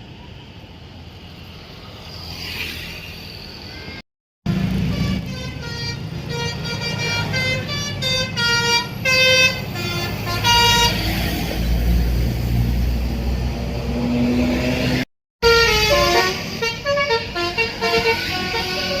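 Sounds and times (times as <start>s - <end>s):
bus engine rumbling: 2.8s - 19.0s
musical air horn tune: 15.4s - 19.0s.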